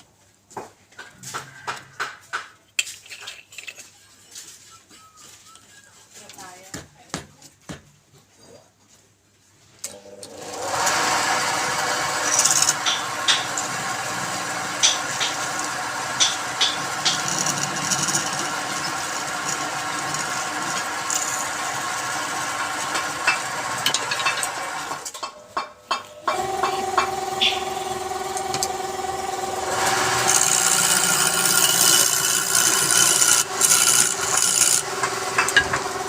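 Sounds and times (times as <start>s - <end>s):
wood lathe humming: 10.3s - 25.0s, 26.2s - 36.0s
turning tool scraping wood: 10.8s - 25.0s, 26.3s - 36.0s.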